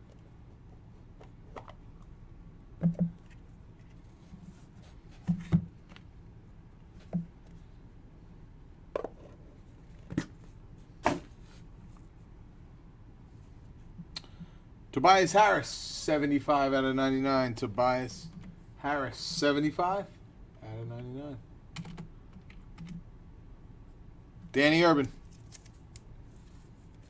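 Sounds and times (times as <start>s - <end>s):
knocks and taps handling card box: 2.8s - 4.0s, 5.1s - 6.1s, 9.0s - 9.4s, 11.0s - 11.4s.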